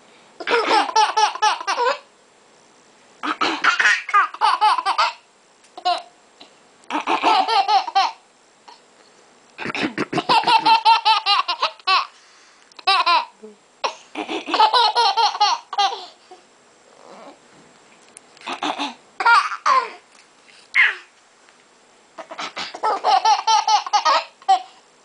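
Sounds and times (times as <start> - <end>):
baby laughing: 0.4 - 2.1, 3.2 - 5.2, 5.8 - 6.1, 6.9 - 8.8, 10.0 - 12.1, 12.8 - 16.2, 18.4 - 20.0, 20.8 - 21.1, 22.2 - 24.8.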